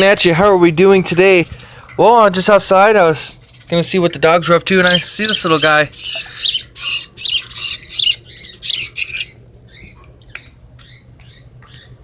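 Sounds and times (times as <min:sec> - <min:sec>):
young bird squawking: 0:04.8 - 0:12.0.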